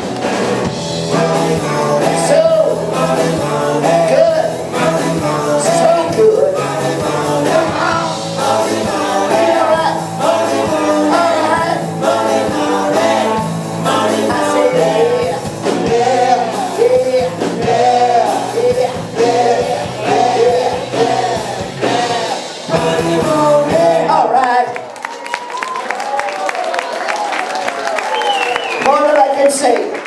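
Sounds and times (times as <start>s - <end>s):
rock and roll band playing: 0.0s - 24.7s
person singing: 1.1s - 24.8s.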